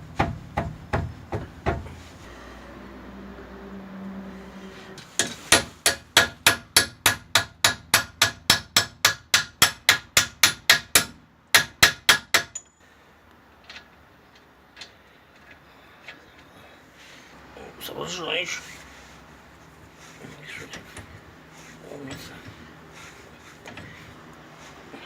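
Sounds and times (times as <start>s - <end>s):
hammer striking metal: 5.0s - 12.8s.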